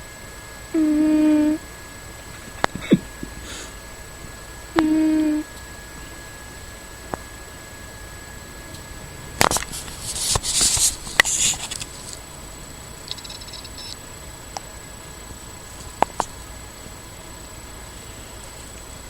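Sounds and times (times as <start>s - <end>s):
cat snoring: 0.7s - 1.6s, 4.8s - 5.5s
sharp clicks: 13.0s - 14.7s.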